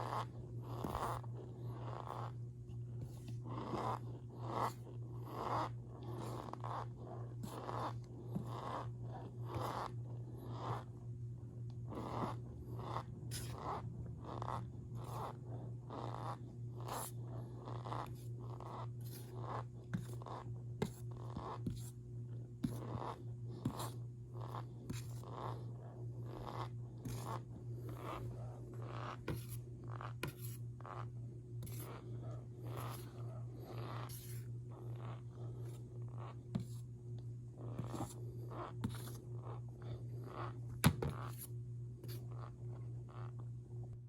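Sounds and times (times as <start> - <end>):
steady low hum: 0.0 - 44.0.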